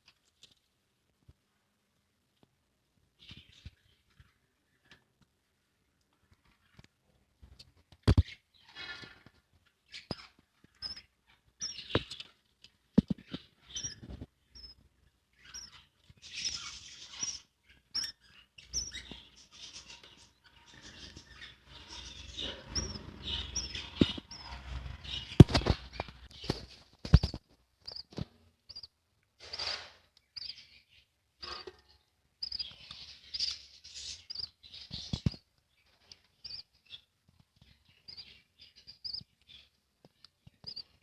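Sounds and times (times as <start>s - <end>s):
budgerigars chirping: 9.9s - 12.3s, 13.2s - 14.8s, 15.4s - 26.6s, 28.7s - 28.9s, 32.4s - 35.3s
sharp clicks and knocks: 25.4s - 28.4s.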